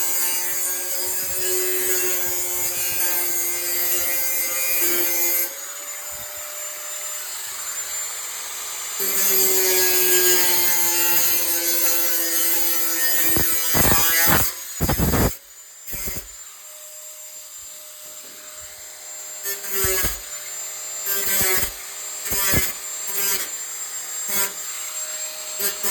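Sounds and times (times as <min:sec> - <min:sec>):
grinder grinding against metal: 0:00.0 - 0:07.1, 0:09.0 - 0:17.0, 0:18.1 - 0:23.6, 0:24.2 - 0:25.9
angle grinder motor whine: 0:12.6 - 0:16.8.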